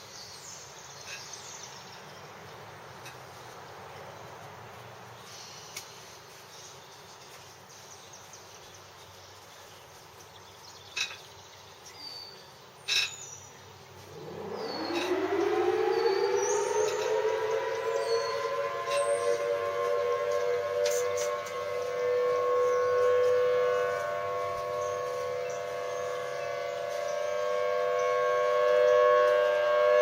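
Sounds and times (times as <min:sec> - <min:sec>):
birds chirping: 0:05.2 - 0:30.0
outdoor warning siren: 0:13.8 - 0:30.0.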